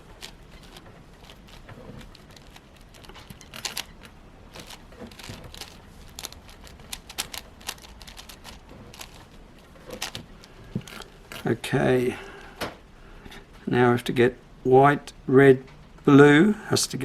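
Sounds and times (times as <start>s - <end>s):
puzzle cube layers clicking: 0.2s - 9.2s, 9.9s - 10.2s.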